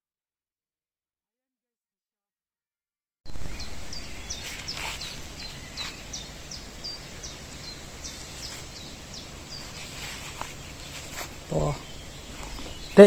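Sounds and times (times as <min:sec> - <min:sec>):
faint outdoor background noise: 0:03.3 - 0:13.0
small bird chirping: 0:03.3 - 0:13.0.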